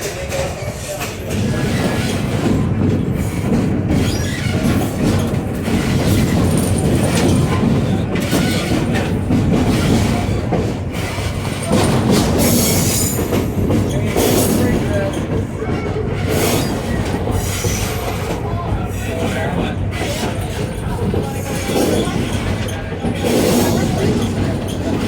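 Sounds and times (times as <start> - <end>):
train wheels rumbling on rails: 0.0 - 25.0
train wheels squealing: 3.2 - 9.1, 9.7 - 18.4.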